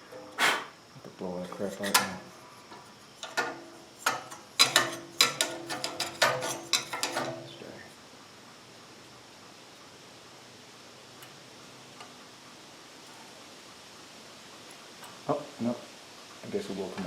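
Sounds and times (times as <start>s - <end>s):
faint steady hiss: 0.0s - 17.0s
metal tools clinking on engine parts: 4.6s - 7.6s.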